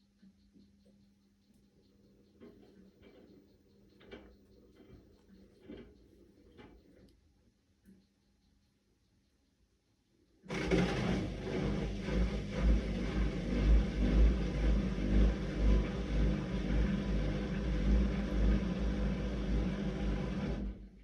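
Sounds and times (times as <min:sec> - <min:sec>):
washing machine spinning: 0:10.5 - 0:21.0.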